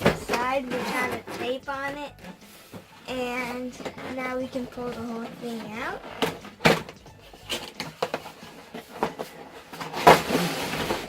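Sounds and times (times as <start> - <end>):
loud cardboard scraping rustle: 0.0 - 1.6, 7.5 - 11.0.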